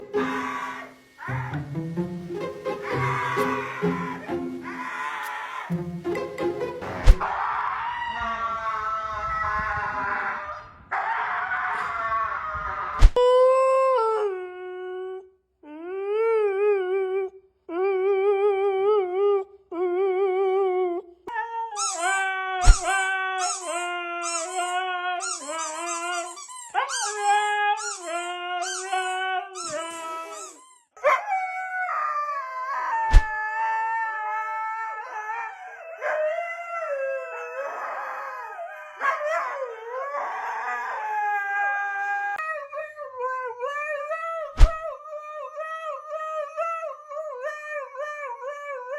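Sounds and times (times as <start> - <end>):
huskies howling: 0.0 - 1.7, 2.6 - 5.8, 7.2 - 13.0, 31.1 - 42.4.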